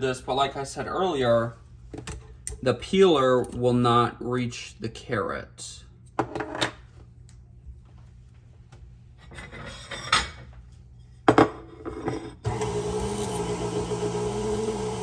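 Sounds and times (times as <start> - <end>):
stand mixer motor humming: 12.5 - 15.0.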